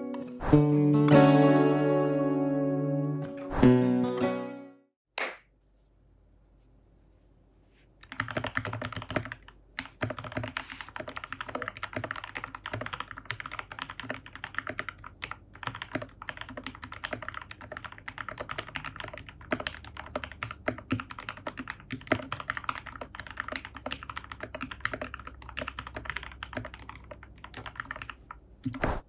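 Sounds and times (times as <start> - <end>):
mechanical keyboard typing: 8.0 - 28.8.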